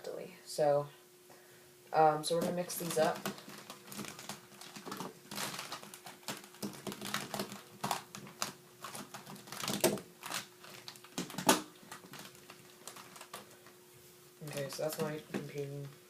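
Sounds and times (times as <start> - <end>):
plastic cubes clacking: 2.4 - 13.6.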